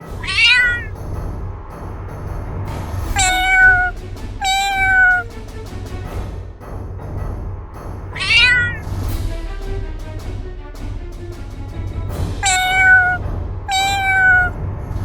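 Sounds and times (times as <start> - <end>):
cat meowing: 0.0 - 0.9, 3.1 - 5.3, 8.2 - 8.8, 12.4 - 14.6
music: 0.0 - 15.0.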